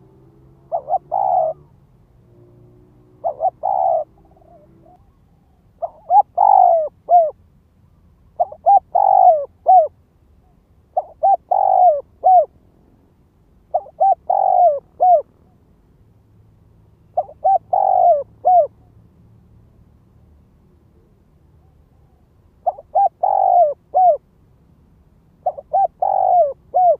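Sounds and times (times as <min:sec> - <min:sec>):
dove cooing: 0:00.0 - 0:07.4, 0:08.4 - 0:12.5, 0:13.7 - 0:15.6, 0:17.2 - 0:18.9, 0:21.0 - 0:24.3, 0:25.4 - 0:26.9.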